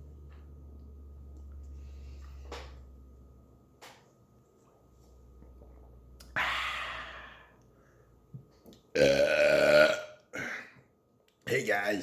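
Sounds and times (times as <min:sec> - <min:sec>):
man sighing: 0:06.4 - 0:07.5
deep burp: 0:08.9 - 0:10.8.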